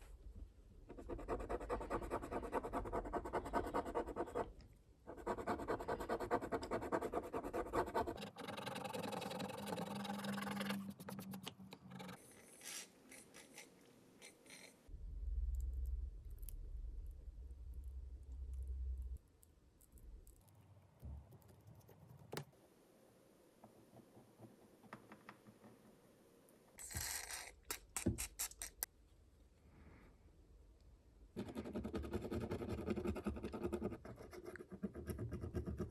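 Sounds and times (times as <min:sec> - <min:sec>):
low rumble: 0:14.9 - 0:19.2.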